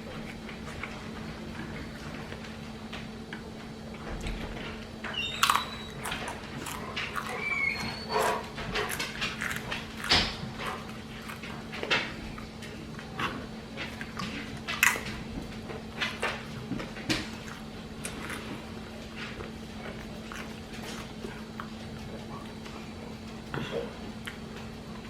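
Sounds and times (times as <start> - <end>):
steady low hum: 0.0 - 25.0
wet chewing clicks: 5.1 - 15.2.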